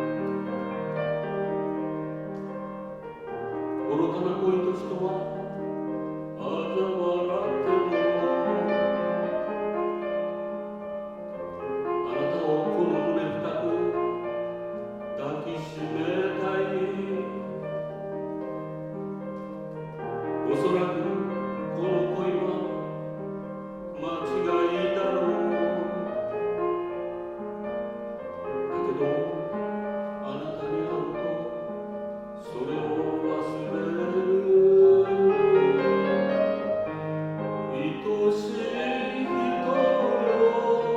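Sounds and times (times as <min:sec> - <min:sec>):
piano accompaniment: 0:00.0 - 0:40.9
man singing operatically: 0:03.8 - 0:05.7, 0:06.4 - 0:09.2, 0:12.0 - 0:14.4, 0:15.2 - 0:17.8, 0:20.4 - 0:23.0, 0:24.0 - 0:26.5, 0:28.6 - 0:36.4, 0:37.7 - 0:40.9.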